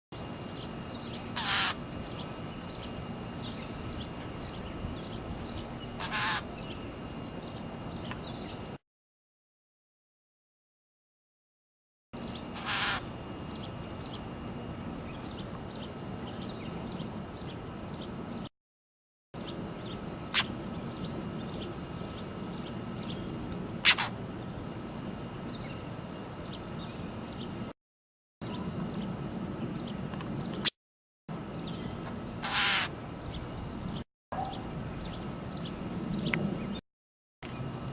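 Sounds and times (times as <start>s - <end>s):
mockingbirds chirping: 0.2s - 8.8s, 12.2s - 18.5s, 19.4s - 27.7s, 28.4s - 30.7s, 31.3s - 36.8s
harsh raspy bird calls: 1.3s - 2.2s, 5.8s - 6.8s, 12.2s - 13.6s, 20.3s - 20.6s, 23.8s - 24.3s, 32.0s - 33.4s
harsh bird call: 1.4s - 1.8s, 6.0s - 6.5s, 12.5s - 13.1s, 32.0s - 33.0s
faint high bird chirps: 31.6s - 36.8s.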